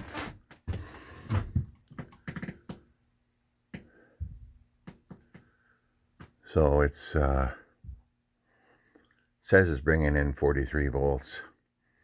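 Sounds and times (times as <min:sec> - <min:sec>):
soft low thumps: 0:04.2 - 0:04.6.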